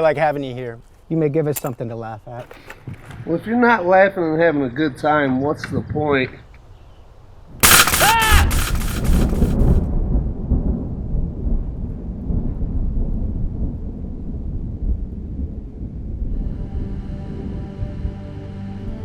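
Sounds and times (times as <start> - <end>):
thunder crack and rolling rumble: 9.0 - 16.4.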